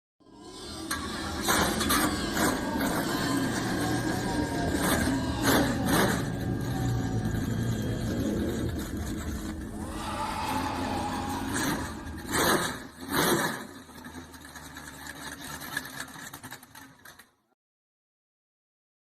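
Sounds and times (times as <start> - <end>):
vehicle engine running: 0.2 - 17.4.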